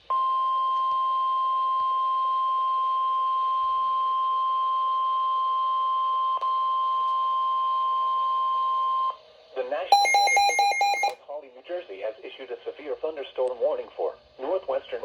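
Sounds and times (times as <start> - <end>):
high-pitched alarm beep: 10.0 - 11.2.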